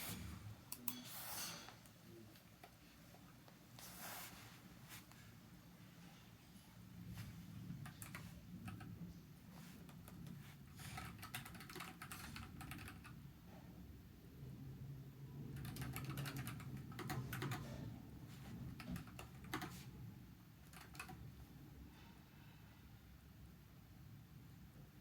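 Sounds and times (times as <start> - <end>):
mechanical keyboard typing: 7.8 - 9.0, 9.8 - 13.2, 15.5 - 17.8, 18.7 - 19.9, 20.6 - 21.2.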